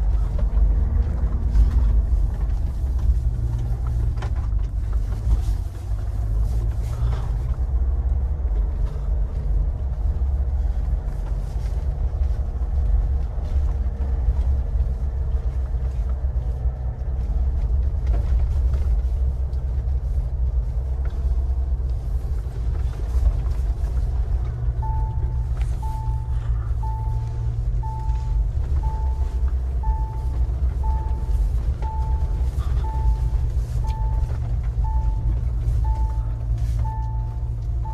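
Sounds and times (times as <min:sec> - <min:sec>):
engine and tyres rumbling: 0:00.0 - 0:37.9
short electronic beep: 0:24.8 - 0:37.9.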